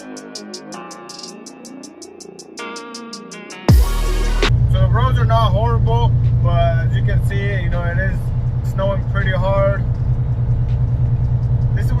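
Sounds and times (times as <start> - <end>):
electronic music with ticking beat: 0.0 - 4.6, 9.8 - 12.0
loud hit with falling sweep: 3.7 - 4.6.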